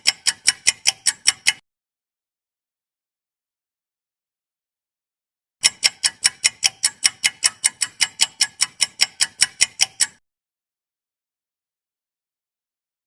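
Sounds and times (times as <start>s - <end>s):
fast clock ticking: 0.0s - 1.6s, 5.6s - 10.2s.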